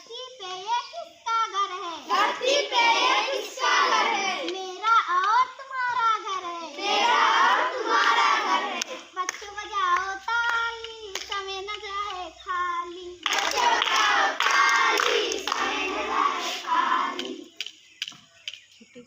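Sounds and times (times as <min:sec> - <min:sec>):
children singing in unison: 0:01.9 - 0:04.8, 0:06.2 - 0:17.6
hand claps: 0:04.0 - 0:05.4, 0:08.4 - 0:12.3, 0:13.2 - 0:18.2.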